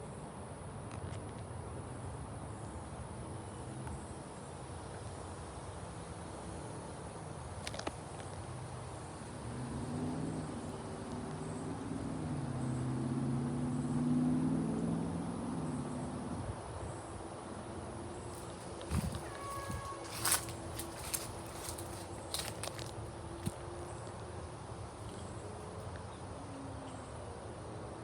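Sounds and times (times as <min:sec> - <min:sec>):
wind blowing across microphone: 0:18.4 - 0:23.7.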